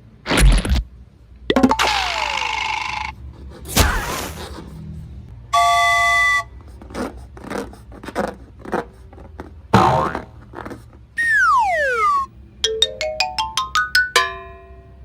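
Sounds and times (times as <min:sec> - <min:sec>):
bright chime: 0:12.7 - 0:15.0.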